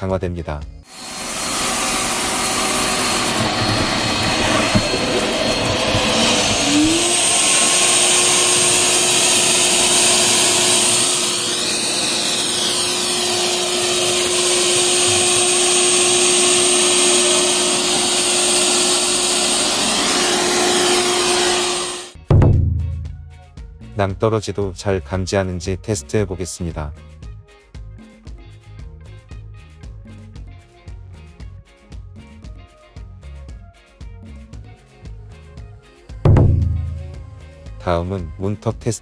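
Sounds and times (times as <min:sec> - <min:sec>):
robot vacuum running: 0:00.9 - 0:22.2.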